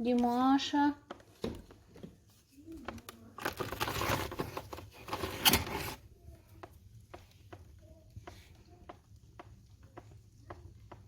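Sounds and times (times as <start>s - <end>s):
wood fire crackling: 5.9s - 11.0s.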